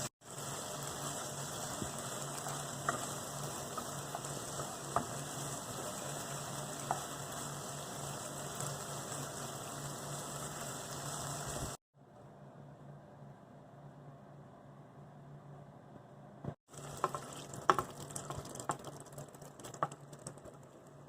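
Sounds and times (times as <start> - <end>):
food sizzling in a pan: 0.0 - 11.8, 16.7 - 20.6
utensil clicking against pan: 16.8 - 20.6.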